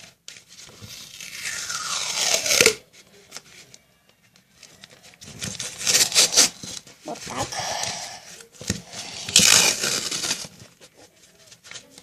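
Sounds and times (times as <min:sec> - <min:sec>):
tape pulled off roll screech: 0:00.9 - 0:02.8.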